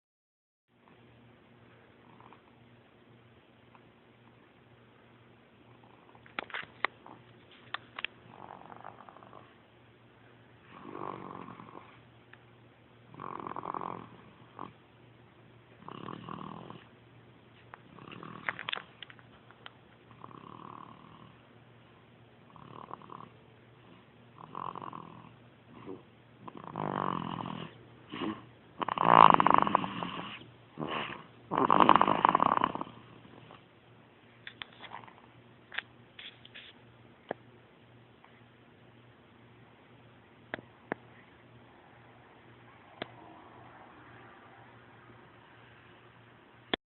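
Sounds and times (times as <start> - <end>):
person snoring: 8.3 - 9.6, 10.7 - 12.0, 13.1 - 14.8, 15.8 - 16.9, 24.4 - 33.2.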